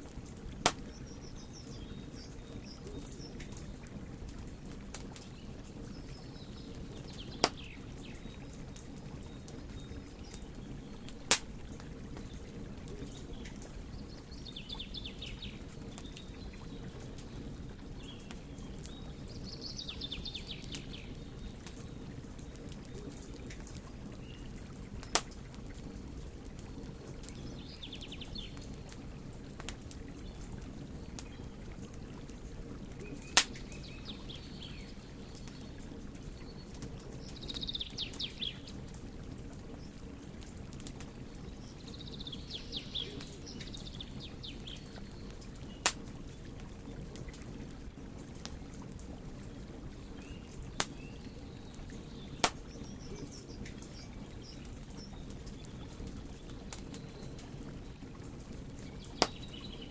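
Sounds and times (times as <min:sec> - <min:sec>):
wood fire crackling: 0:00.0 - 0:59.9
loud sharp fire pops: 0:00.6 - 0:00.9, 0:11.3 - 0:11.5, 0:33.4 - 0:33.6, 0:52.4 - 0:52.6.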